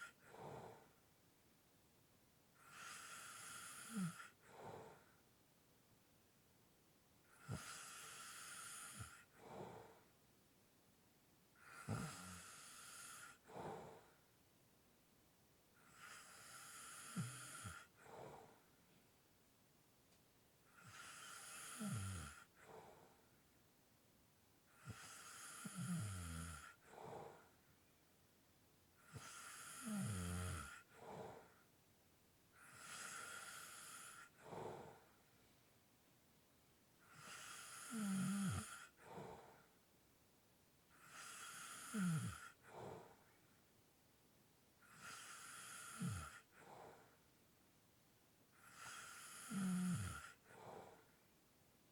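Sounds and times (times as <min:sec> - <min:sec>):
person snoring and breathing heavily: 0:02.7 - 0:05.1, 0:16.0 - 0:18.6, 0:20.8 - 0:23.0, 0:24.8 - 0:27.4, 0:29.1 - 0:31.5, 0:37.1 - 0:39.6, 0:41.0 - 0:43.2, 0:44.9 - 0:47.0, 0:48.6 - 0:51.1.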